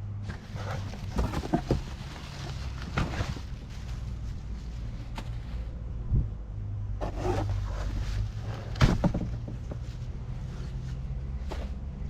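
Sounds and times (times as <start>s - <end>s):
parts knocking and scraping: 0.2s - 3.6s, 7.0s - 10.7s.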